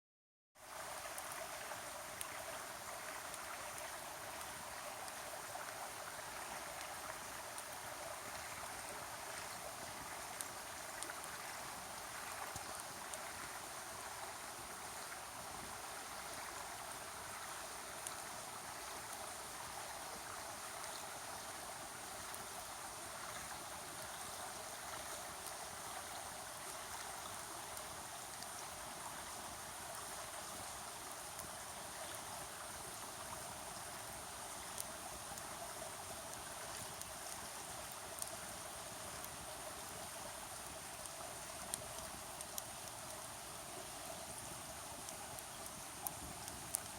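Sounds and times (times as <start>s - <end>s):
faint sharp ticks: 12.2s - 13.4s, 25.0s - 28.7s, 31.3s - 32.3s, 34.6s - 40.0s, 40.6s - 43.4s, 44.1s - 46.9s.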